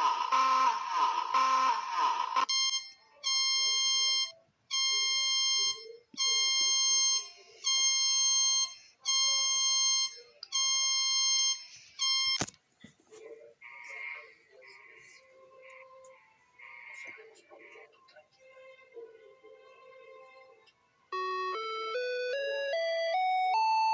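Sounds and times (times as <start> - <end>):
harsh buzzing tone: 0.0 - 2.6
electronic alarm beeping: 0.0 - 12.5, 21.1 - 23.9.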